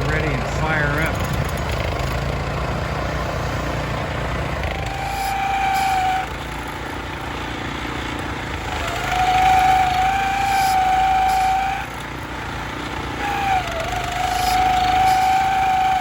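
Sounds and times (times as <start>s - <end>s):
small engine running: 0.0s - 16.0s.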